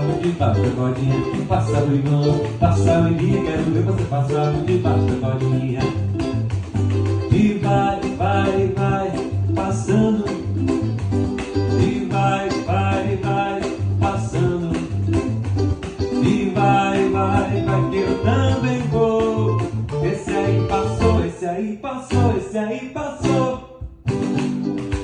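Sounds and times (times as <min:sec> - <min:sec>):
upbeat dance music: 0:15.7 - 0:21.3.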